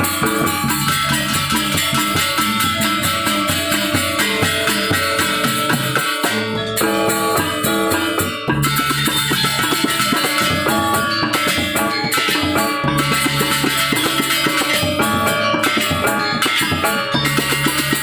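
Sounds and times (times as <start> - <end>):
drums: 0.0 - 18.0
metallophones and gongs ringing: 0.0 - 18.0.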